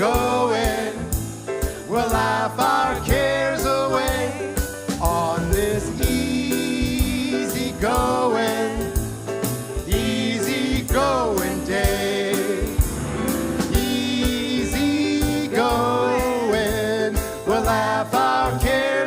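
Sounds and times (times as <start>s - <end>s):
live band playing upbeat tune: 0.0s - 19.0s
person singing: 1.9s - 8.9s, 13.7s - 19.0s.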